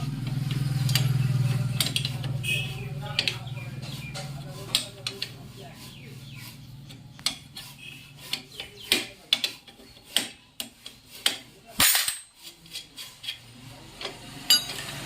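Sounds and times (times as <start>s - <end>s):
metal tools knocking and clinking: 10.2s - 12.4s, 14.5s - 14.9s.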